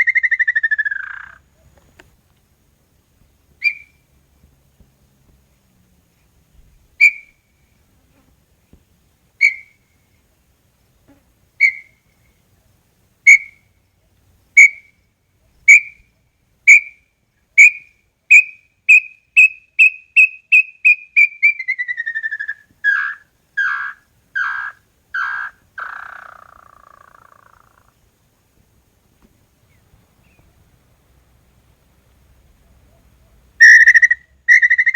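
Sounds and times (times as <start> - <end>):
bird whistled song: 0.0 - 1.4, 3.6 - 4.0, 7.0 - 7.4, 9.4 - 9.8, 11.6 - 12.0, 13.3 - 13.6, 14.6 - 14.9, 15.7 - 16.0, 17.6 - 27.9, 33.6 - 34.9.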